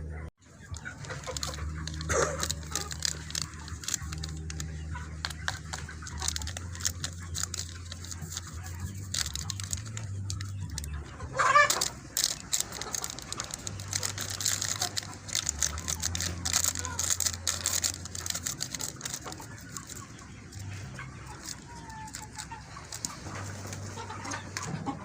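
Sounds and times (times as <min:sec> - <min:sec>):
chickens clucking: 0:00.0 - 0:25.0
small clicks and knocks: 0:00.7 - 0:24.8
chicken squawk: 0:10.7 - 0:25.0.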